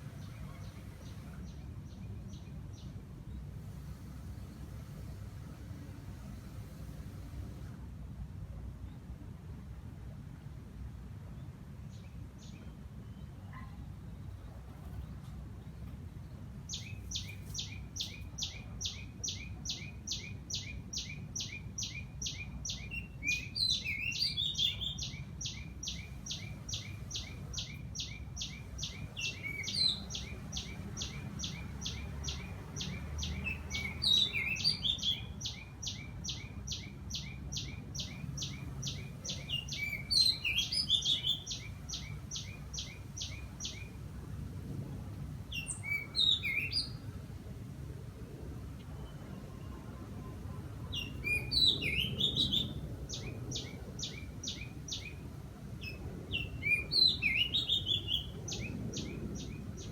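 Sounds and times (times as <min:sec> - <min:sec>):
bird chirping phrases: 0:15.6 - 0:44.0, 0:45.5 - 0:47.1, 0:49.0 - 0:55.2, 0:55.8 - 0:59.9.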